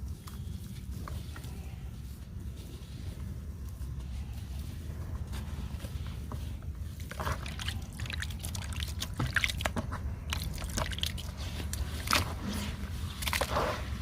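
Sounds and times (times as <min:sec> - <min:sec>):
steady low hum: 0:00.0 - 0:14.0
water trickling and dripping: 0:07.0 - 0:12.2.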